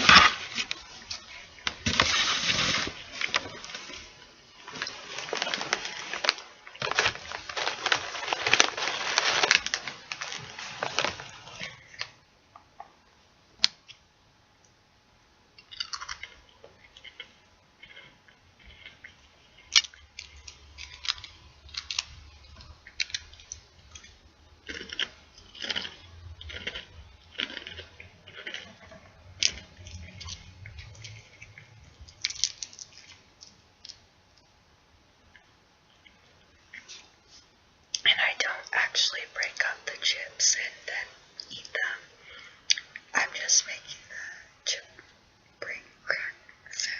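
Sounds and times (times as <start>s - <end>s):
chip bag crinkling: 0.0s - 12.2s, 15.6s - 34.0s.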